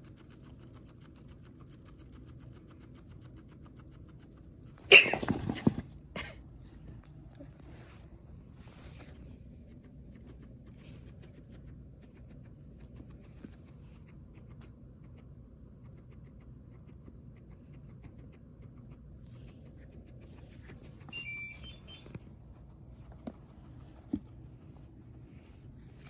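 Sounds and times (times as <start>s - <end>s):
guinea pig rustling and scratching: 0.0s - 6.0s, 6.7s - 26.0s
low room hum: 0.0s - 26.0s
high-pitched chirp: 21.1s - 22.2s.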